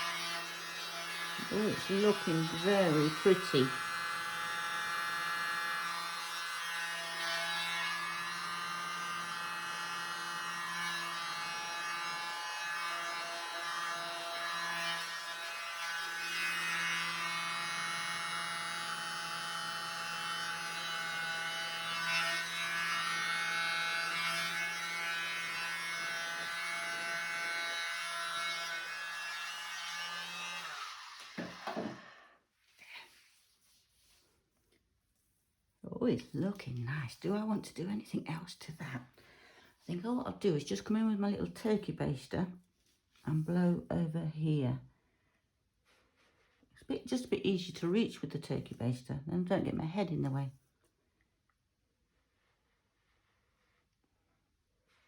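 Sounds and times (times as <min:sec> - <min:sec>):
electric blower motor humming: 0:00.0 - 0:06.2, 0:30.1 - 0:32.2.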